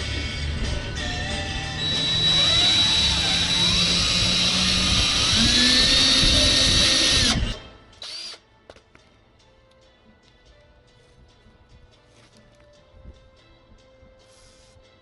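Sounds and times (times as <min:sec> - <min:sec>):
cordless drill whining: 0:01.7 - 0:08.4.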